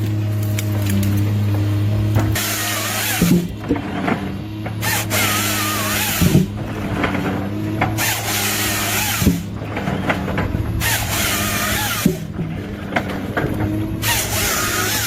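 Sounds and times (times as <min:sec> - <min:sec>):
engine humming: 0:00.0 - 0:15.0
machine saw cutting wood: 0:00.0 - 0:15.0.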